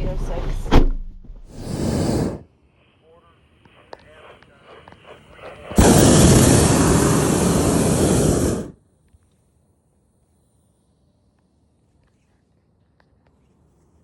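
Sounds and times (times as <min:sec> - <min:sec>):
propane burner firing: 0:01.5 - 0:02.4, 0:05.7 - 0:08.8.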